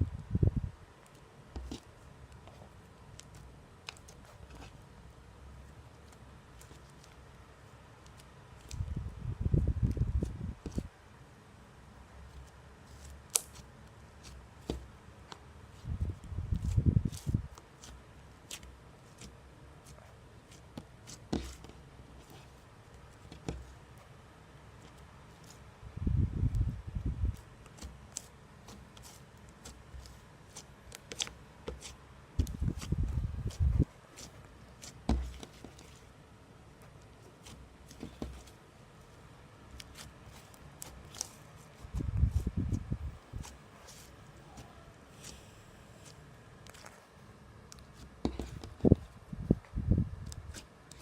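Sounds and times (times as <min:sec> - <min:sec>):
slime squishing: 0:01.0 - 0:10.9, 0:12.1 - 0:51.0
low thumping handling noise: 0:32.4 - 0:33.9.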